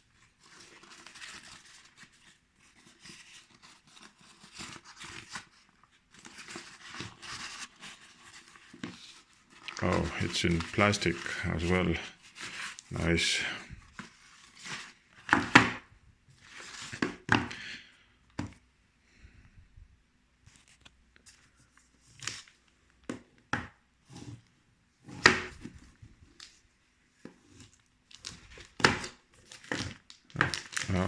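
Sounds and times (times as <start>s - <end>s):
plastic wrapping rustling: 0.0s - 17.3s, 27.7s - 31.0s.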